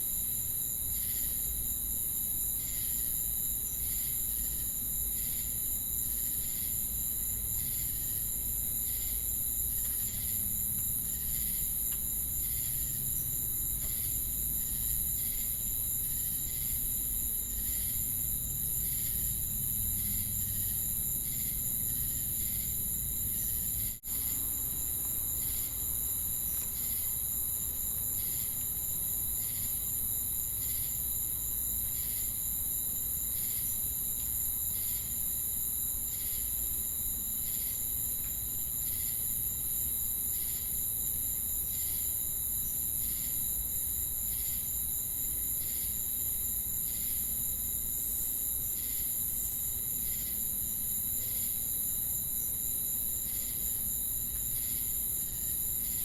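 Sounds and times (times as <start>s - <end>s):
crickets chirping: 0.0s - 56.0s.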